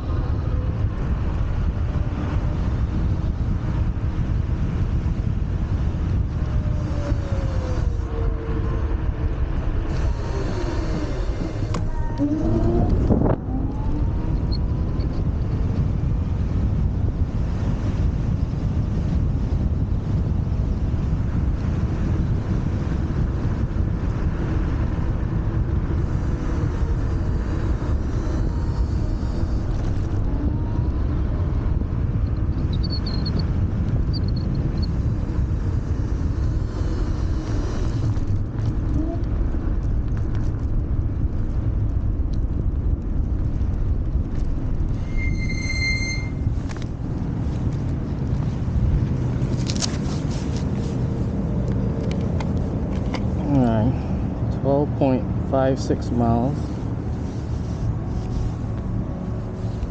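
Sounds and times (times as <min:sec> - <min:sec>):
electric scooter low rumble: 0:00.0 - 0:59.9
wind buffeting microphone: 0:00.0 - 0:59.9
short high beep: 0:45.0 - 0:46.4.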